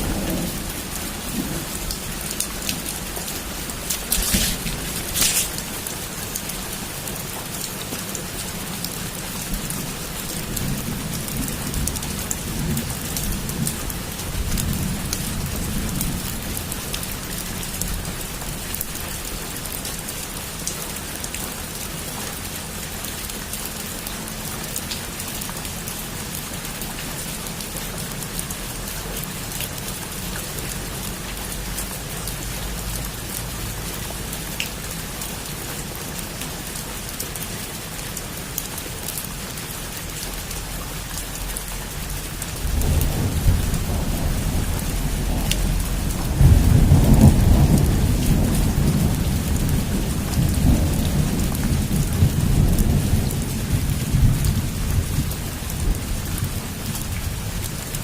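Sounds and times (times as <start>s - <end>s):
heavy rain: 0.0s - 58.0s
thunder rumble: 42.6s - 56.2s.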